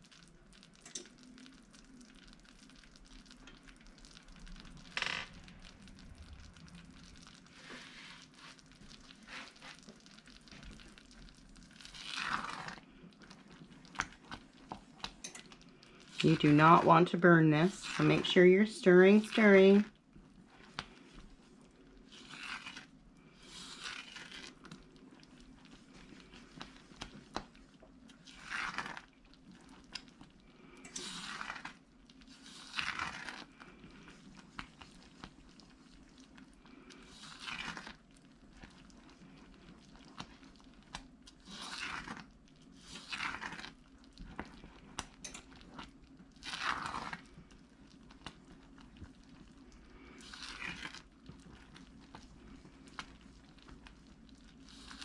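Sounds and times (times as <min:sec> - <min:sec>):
steady low hum: 0:00.8 - 0:09.3.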